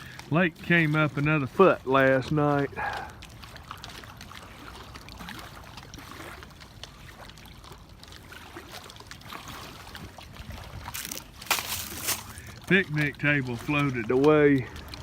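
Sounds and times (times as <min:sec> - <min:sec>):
small waves lapping: 0:00.0 - 0:15.0
wind noise on microphone: 0:09.9 - 0:11.5.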